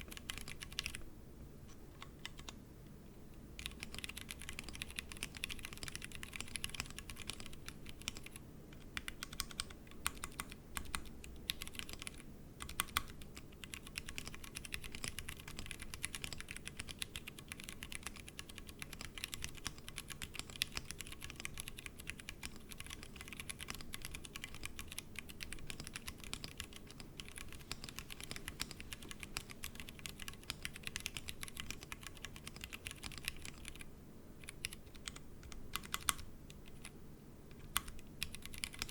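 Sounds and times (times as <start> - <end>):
fast typing on mechanical keyboard: 0.0 - 1.0, 2.0 - 2.6, 3.6 - 36.9, 37.6 - 38.9.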